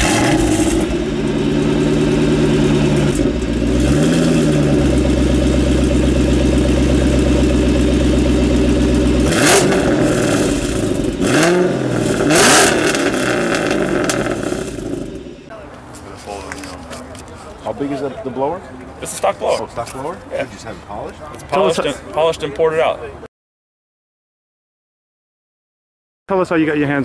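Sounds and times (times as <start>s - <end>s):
car engine idling and revving: 0.0s - 15.5s.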